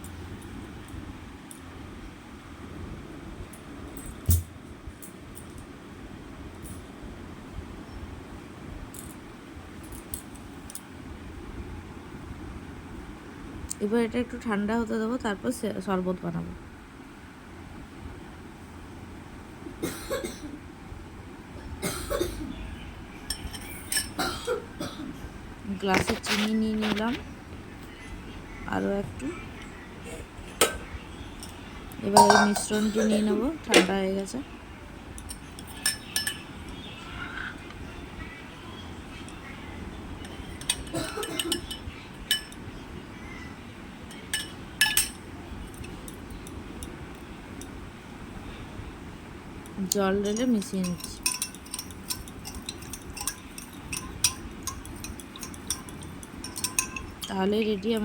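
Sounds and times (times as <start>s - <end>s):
spoon clinking against glass: 23.2s - 24.3s, 31.4s - 33.9s, 35.2s - 36.9s, 40.2s - 42.7s, 44.1s - 46.6s, 50.2s - 58.0s
person coughing: 32.2s - 33.5s.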